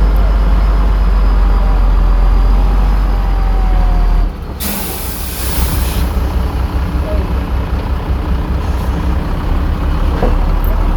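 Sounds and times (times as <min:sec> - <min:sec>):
diesel truck engine rumbling: 0:00.0 - 0:10.9
air brake hiss: 0:04.6 - 0:06.3.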